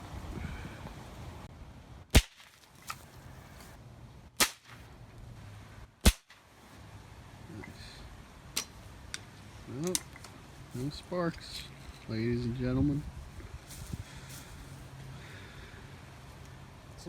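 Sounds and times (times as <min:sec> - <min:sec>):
gunshots: 0:02.2 - 0:02.5, 0:06.0 - 0:06.4.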